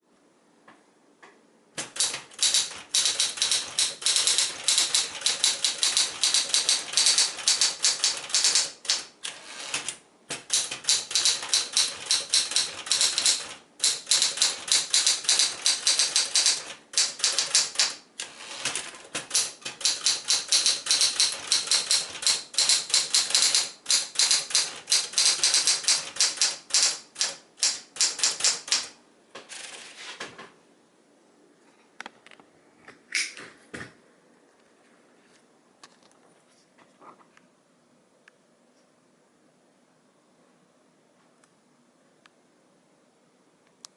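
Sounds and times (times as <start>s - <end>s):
typewriter keystrokes: 1.8s - 29.9s.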